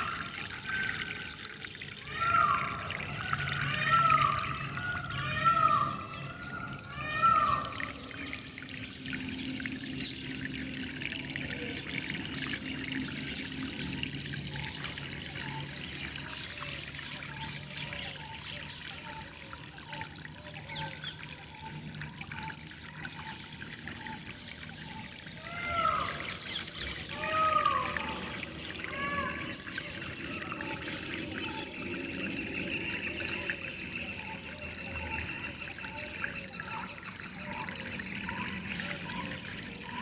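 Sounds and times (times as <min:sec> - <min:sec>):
water trickling and flowing: 0:00.0 - 0:40.0
birds calling: 0:02.2 - 0:08.5, 0:20.5 - 0:40.0.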